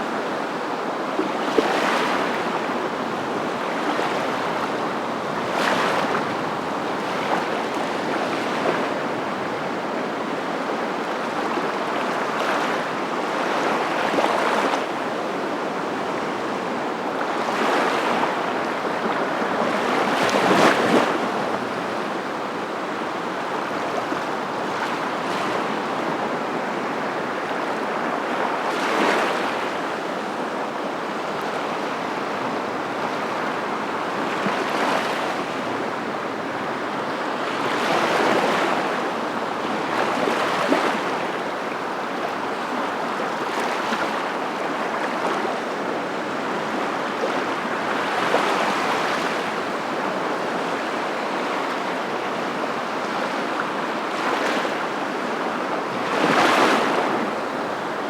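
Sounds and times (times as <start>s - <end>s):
sea waves washing in: 1.4s - 9.4s.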